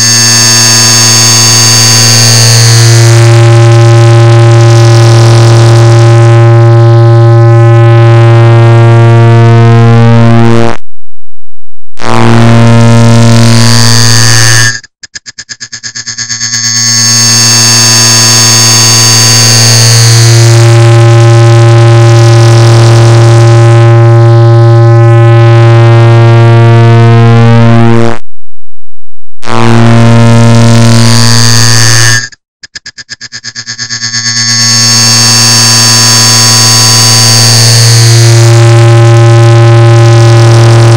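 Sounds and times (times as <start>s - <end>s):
distorted buzzing drone: 0.0s - 10.8s, 11.9s - 28.2s, 29.4s - 40.9s
rapid clicks: 14.7s - 16.8s.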